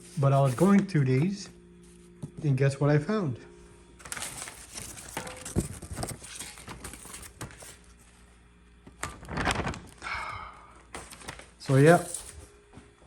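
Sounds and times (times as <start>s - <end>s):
papers rustling: 0.0s - 2.5s, 4.0s - 8.2s, 8.8s - 10.1s, 10.9s - 13.0s.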